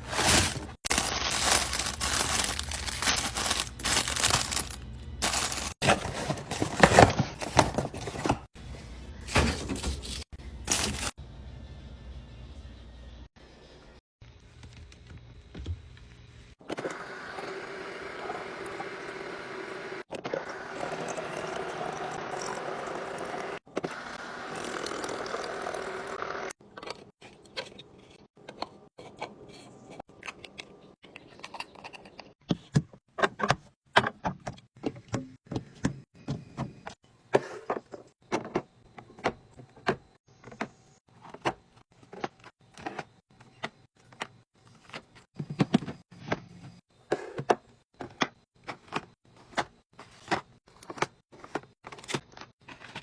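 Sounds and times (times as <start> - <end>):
containers and packaging handled: 0.0 - 11.2.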